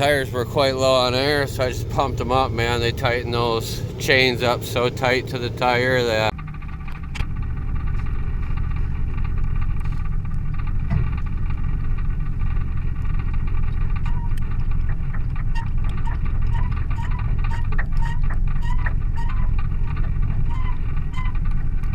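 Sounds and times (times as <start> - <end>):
vehicle engine rumbling: 0.0 - 21.9
clicks and rattles: 4.4 - 21.9
short high squeaks: 14.0 - 14.5, 15.4 - 21.4.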